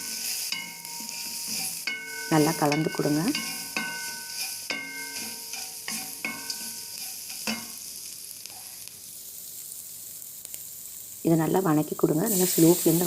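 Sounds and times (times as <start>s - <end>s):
food frying in oil: 0.0s - 13.0s
spoon knocking against pan: 0.6s - 6.8s, 7.4s - 7.8s.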